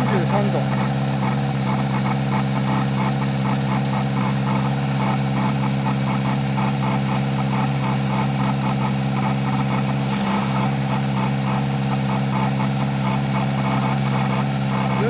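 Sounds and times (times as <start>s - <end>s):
motorcycle engine idling: 0.0s - 15.0s
repeating air intake noise: 9.5s - 12.9s.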